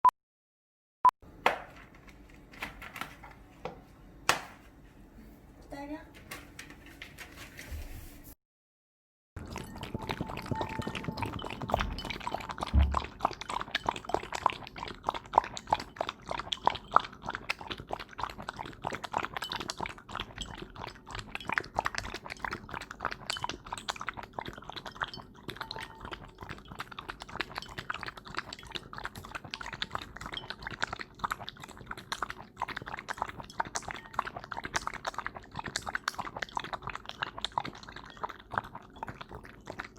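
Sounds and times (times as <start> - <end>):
dog lapping milk: 9.4 - 39.9.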